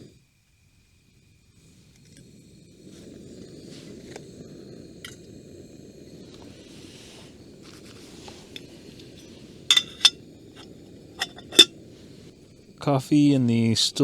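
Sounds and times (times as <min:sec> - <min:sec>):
gas stove burner rushing: 0:01.6 - 0:12.7
metal cookware clinking: 0:09.0 - 0:11.7.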